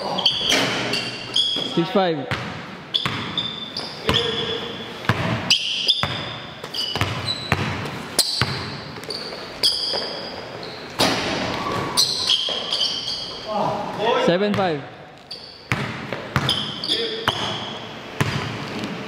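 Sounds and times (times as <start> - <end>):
sneaker squeaks: 0.0 - 13.7, 15.1 - 19.0
basketball bouncing on hard court: 2.3 - 4.4, 5.1 - 9.2, 15.7 - 18.9.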